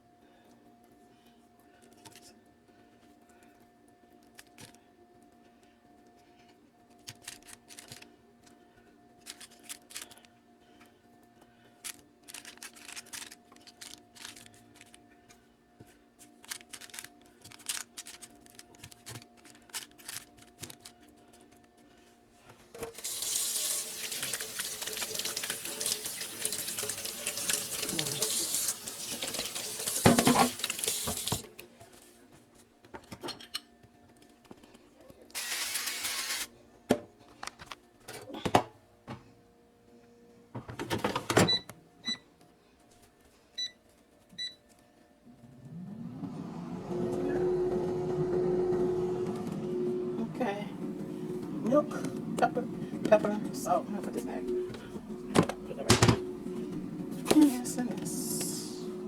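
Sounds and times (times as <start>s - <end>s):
tap running into sink: 22.8s - 31.5s
kitchen clinks and knocks: 27.7s - 31.4s, 54.7s - 56.3s.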